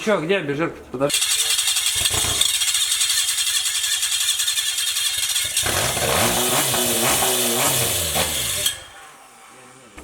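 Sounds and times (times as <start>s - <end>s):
starter motor grinding: 1.1s - 8.9s.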